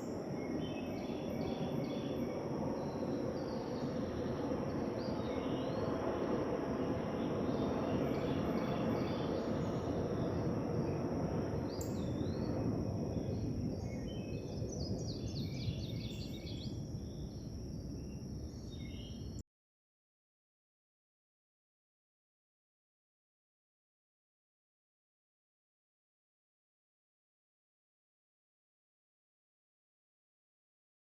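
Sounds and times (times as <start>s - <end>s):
outdoor background noise: 0.0s - 19.4s.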